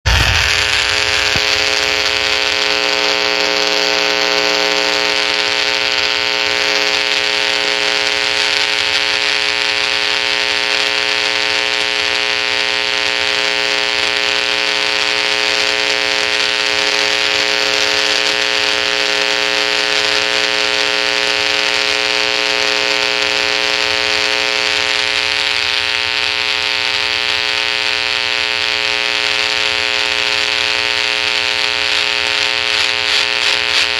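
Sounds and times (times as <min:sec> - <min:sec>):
harsh electrical buzz: 0:00.0 - 0:33.9.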